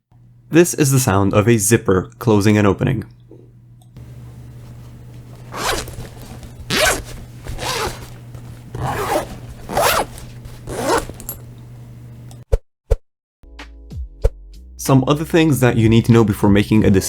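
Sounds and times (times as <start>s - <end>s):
zipper pulled open and closed: 5.4s - 11.5s.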